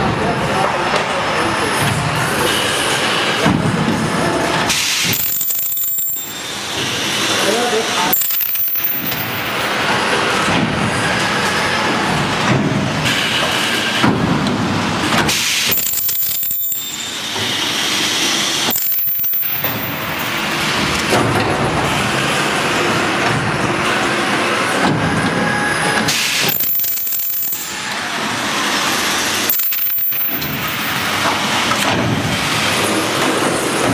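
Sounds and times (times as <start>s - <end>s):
welding machine clattering: 8.1s - 9.7s, 15.1s - 17.7s, 18.7s - 20.6s, 26.1s - 27.9s, 29.5s - 31.9s.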